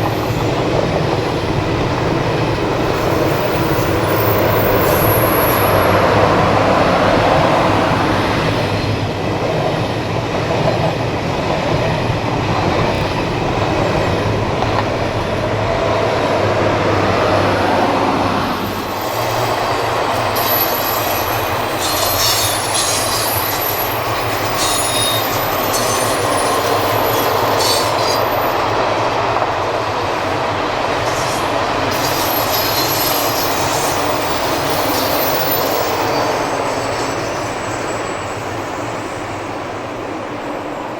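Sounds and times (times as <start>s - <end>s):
electric train rumbling past: 0.0s - 40.9s
train wheels squealing: 2.7s - 6.7s, 18.6s - 28.7s, 31.0s - 40.9s.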